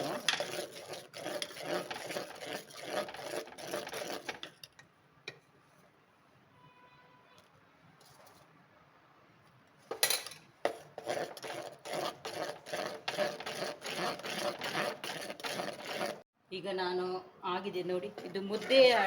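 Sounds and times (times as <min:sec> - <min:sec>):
ladle stirring thick dough in pot: 0:00.0 - 0:04.8, 0:10.7 - 0:16.2, 0:17.6 - 0:19.0.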